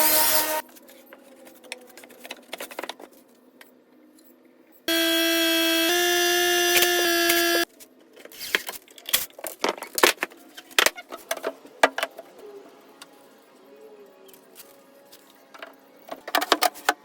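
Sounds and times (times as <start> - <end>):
power tool whining: 4.9 - 7.7.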